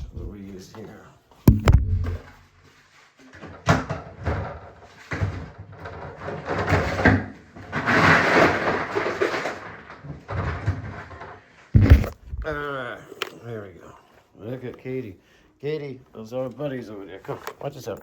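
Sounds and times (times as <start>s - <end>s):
sharp knock: 1.5s - 2.4s, 11.8s - 12.6s
rummaging and clattering in container: 4.1s - 12.6s.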